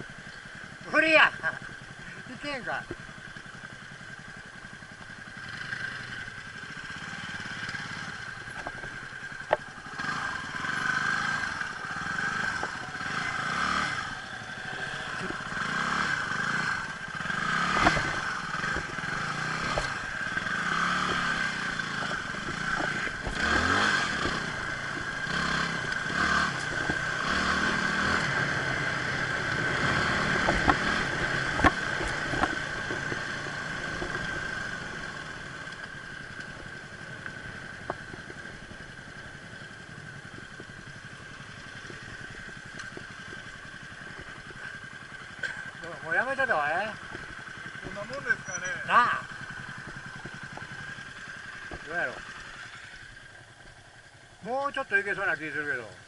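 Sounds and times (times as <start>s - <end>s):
motorcycle engine running: 0.0s - 56.0s
stones clattering under tyres: 8.3s - 10.1s, 12.4s - 12.8s, 17.0s - 28.5s, 29.9s - 35.1s, 40.2s - 46.1s, 47.0s - 48.2s, 49.4s - 52.0s.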